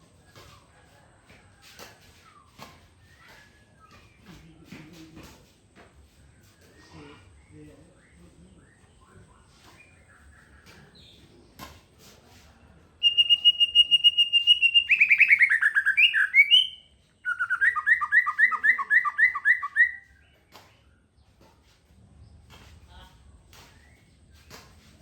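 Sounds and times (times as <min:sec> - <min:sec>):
songbird singing: 0:06.3 - 0:11.6, 0:13.0 - 0:21.5, 0:22.2 - 0:24.6.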